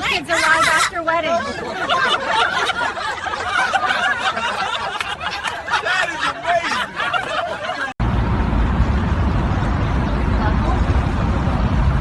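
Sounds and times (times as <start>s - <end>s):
people snickering and chuckling: 1.2s - 8.0s
steady low rumble: 8.0s - 12.0s.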